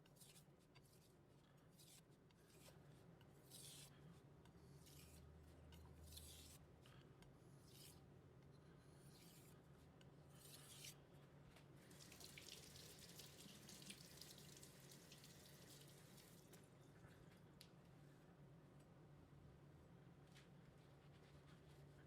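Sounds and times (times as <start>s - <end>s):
knife scraping on whetstone: 0.0s - 1.1s, 1.7s - 2.8s, 3.4s - 3.9s, 4.8s - 6.6s, 7.6s - 8.0s, 9.0s - 9.6s, 10.4s - 11.0s.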